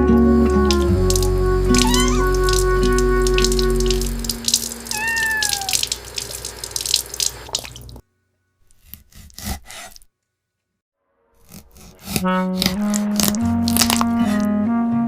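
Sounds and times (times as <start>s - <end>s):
background music: 0.0s - 4.8s, 12.0s - 15.0s
rapid clattering and splashing: 0.6s - 8.0s
cat meow: 1.7s - 2.6s, 4.9s - 6.0s.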